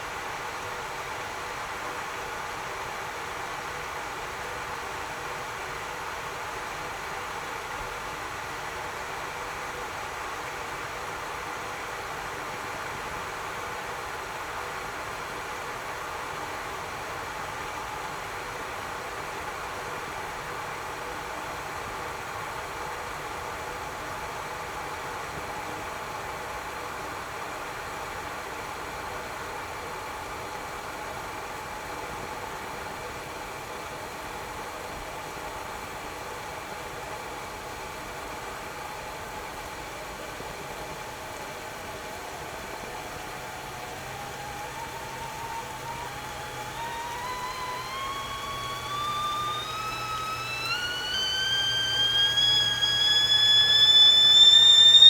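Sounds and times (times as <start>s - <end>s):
boiling water hissing: 37.7s - 55.0s
kettle whistle rising in pitch: 43.2s - 55.0s.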